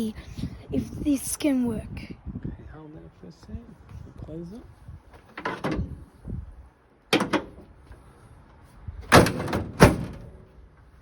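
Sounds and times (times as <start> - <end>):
car bonnet slamming: 7.1 - 7.7, 9.1 - 10.5.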